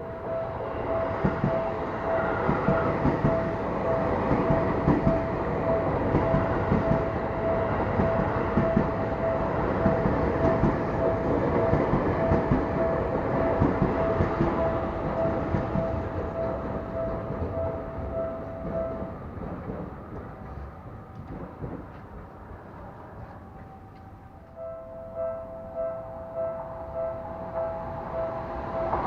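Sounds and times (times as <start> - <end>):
level crossing warning bell: 0.0 - 20.1, 23.3 - 29.0
train wheels clattering over rails: 1.2 - 24.1.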